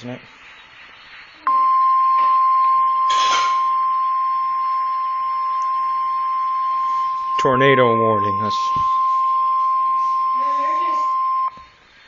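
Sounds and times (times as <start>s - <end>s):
brief noise: 1.5s - 11.6s
steady alarm tone: 1.5s - 11.6s.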